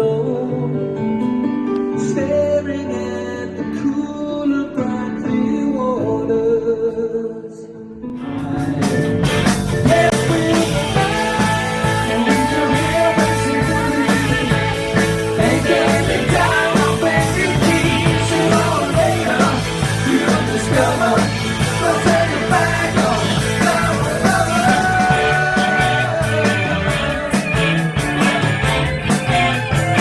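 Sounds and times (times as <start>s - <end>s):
person singing: 1.8s - 30.0s
drums: 8.1s - 30.0s
rock band playing: 8.1s - 30.0s.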